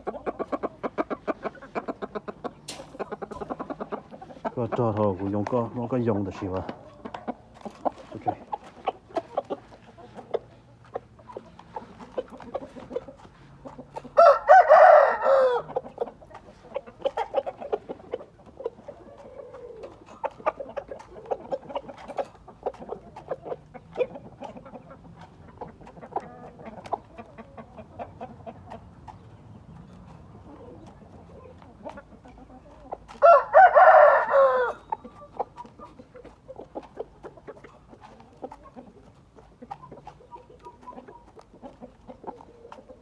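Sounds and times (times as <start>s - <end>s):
rooster crowing: 14.2s - 15.7s, 33.2s - 34.8s.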